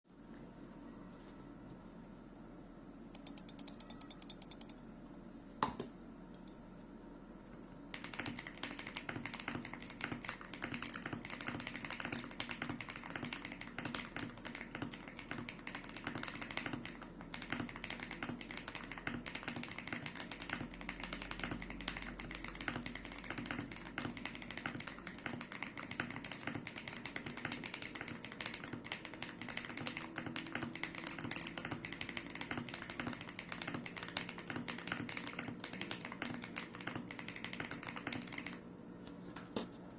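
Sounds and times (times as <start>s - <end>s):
typing on mechanical keyboard: 7.9s - 38.6s.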